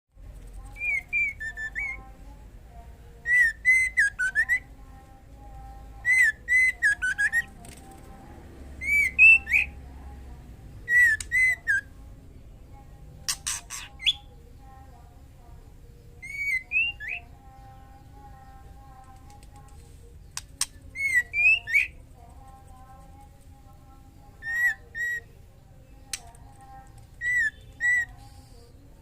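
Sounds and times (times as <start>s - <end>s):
bird whistling calls: 3.3s - 4.6s, 8.8s - 9.8s, 10.9s - 11.9s, 16.2s - 17.2s, 27.2s - 28.4s.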